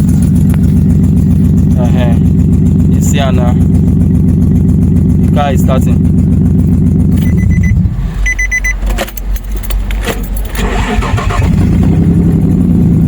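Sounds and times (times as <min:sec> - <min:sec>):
car engine running: 0:00.0 - 0:13.0
short beeps: 0:07.2 - 0:08.8.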